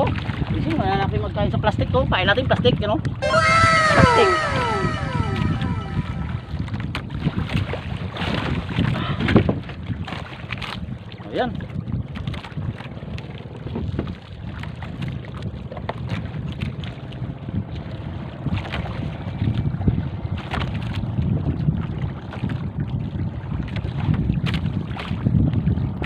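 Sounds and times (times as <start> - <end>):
water lapping against boat: 10.2 - 26.0.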